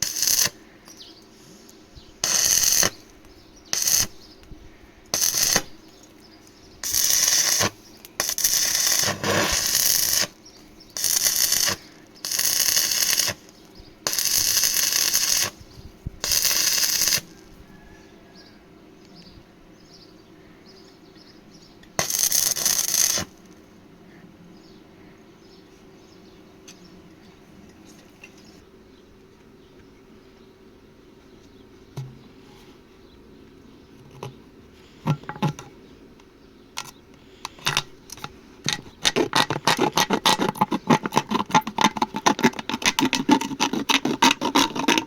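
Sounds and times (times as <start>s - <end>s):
arc welding crackling: 0.0s - 17.6s, 21.8s - 23.7s.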